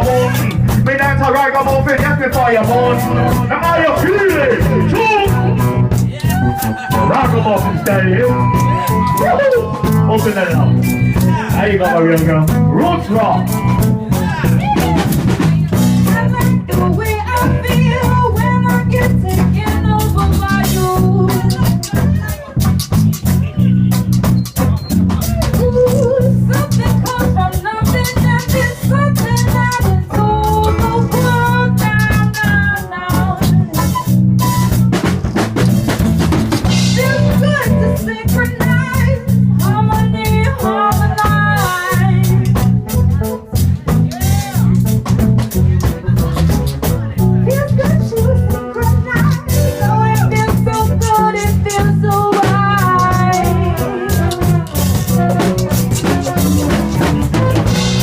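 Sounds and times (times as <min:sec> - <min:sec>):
drum kit: 0:00.0 - 0:58.0
reggae band playing: 0:00.0 - 0:58.0
stepping bass line: 0:00.0 - 0:58.0
wavering melody line: 0:02.7 - 0:12.2.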